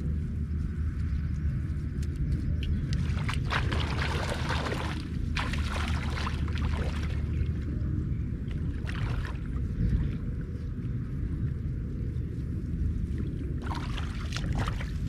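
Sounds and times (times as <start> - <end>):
steady low rumble: 0.0 - 15.0
water splashing and sloshing: 2.6 - 10.7, 13.0 - 15.0.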